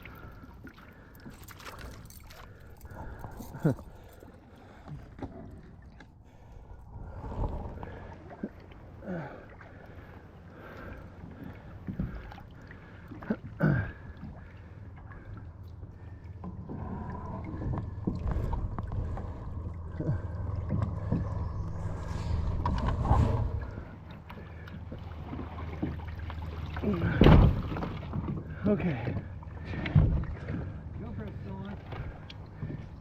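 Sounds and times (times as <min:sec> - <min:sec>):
water sloshing and splashing: 0:00.0 - 0:33.0
low rumble: 0:01.3 - 0:12.6, 0:14.3 - 0:33.0.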